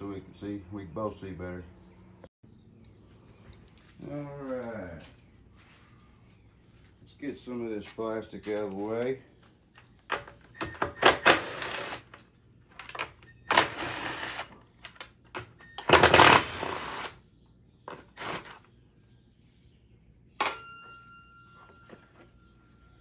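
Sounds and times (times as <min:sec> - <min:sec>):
faint steady tone: 0:19.0 - 0:23.0.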